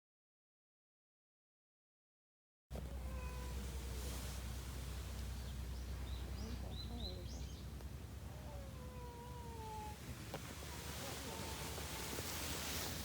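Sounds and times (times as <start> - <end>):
low background rumble: 2.7 - 13.0
birds chirping: 2.9 - 11.5.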